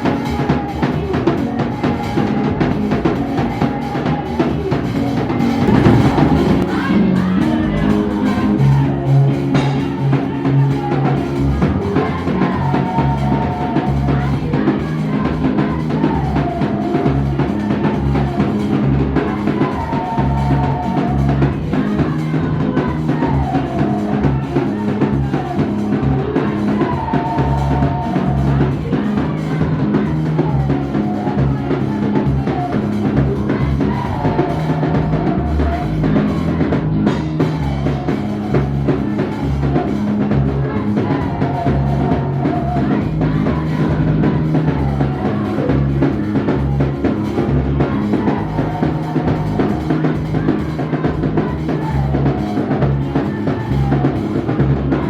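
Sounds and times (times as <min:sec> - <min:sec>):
bass line: 0:05.3 - 0:55.0
drum-kit beat: 0:05.5 - 0:07.7.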